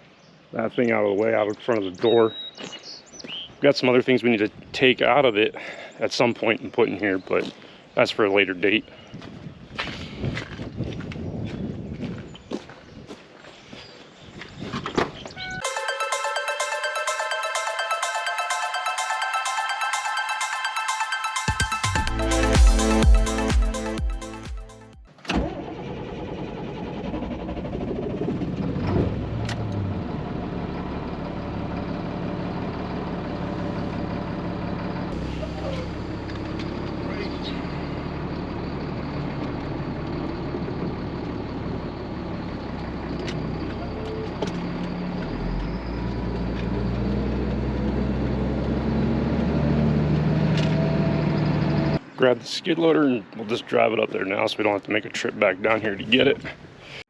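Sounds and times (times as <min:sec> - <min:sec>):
vehicle engine running: 0:27.6 - 0:46.4.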